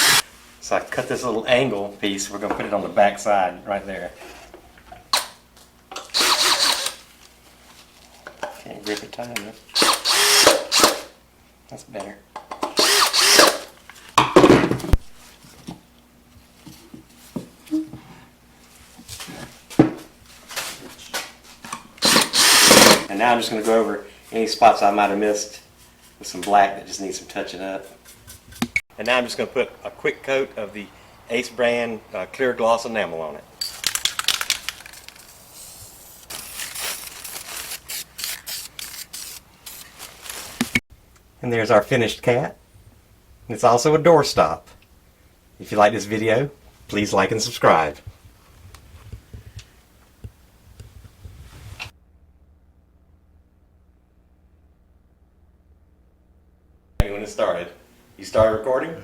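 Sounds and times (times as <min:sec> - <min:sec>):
enamel brush strokes hissing: 0:35.3 - 0:40.0.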